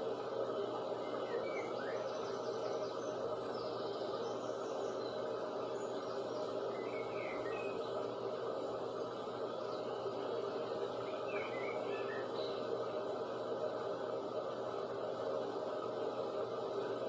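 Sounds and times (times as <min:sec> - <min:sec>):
steady background noise: 0:00.0 - 0:17.0
bird chirps and trills: 0:00.9 - 0:08.3, 0:08.9 - 0:13.1.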